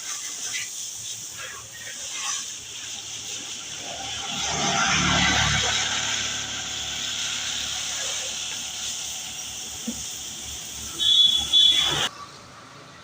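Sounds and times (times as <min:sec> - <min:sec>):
pressure washer spraying water: 0:00.0 - 0:12.1.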